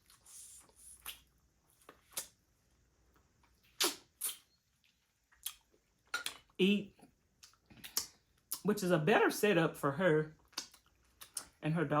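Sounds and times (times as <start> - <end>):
wet lip smacks: 1.9 - 2.4, 3.7 - 4.5, 10.5 - 11.5.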